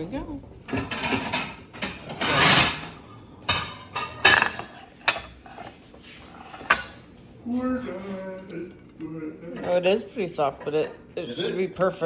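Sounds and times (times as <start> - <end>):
utensils clattering on frying pan: 0.7 - 7.0.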